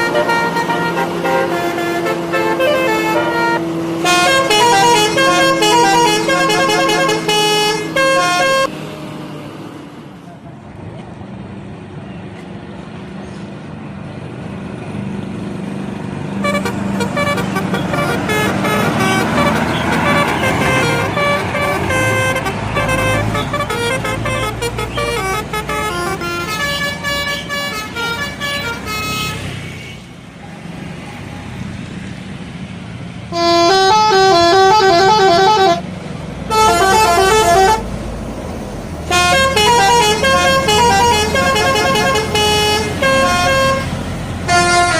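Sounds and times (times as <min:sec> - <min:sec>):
multi-tone musical bus horn: 0:00.0 - 0:08.8, 0:16.4 - 0:30.2, 0:33.3 - 0:38.0, 0:39.0 - 0:44.9
bus engine running: 0:00.0 - 0:44.9.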